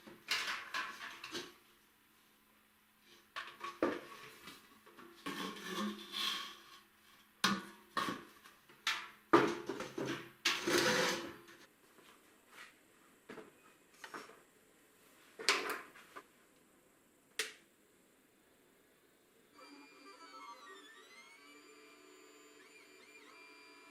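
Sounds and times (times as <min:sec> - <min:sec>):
objects scraping: 0:03.1 - 0:06.9, 0:09.5 - 0:11.7.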